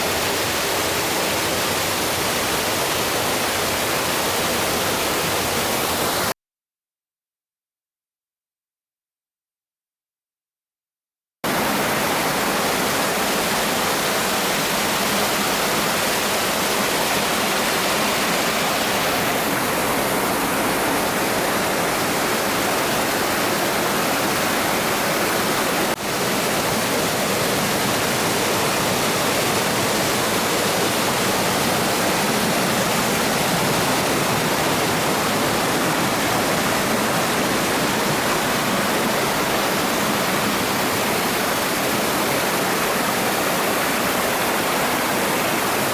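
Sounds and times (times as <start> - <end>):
small waterfall rushing: 0.0 - 6.3, 11.4 - 45.9.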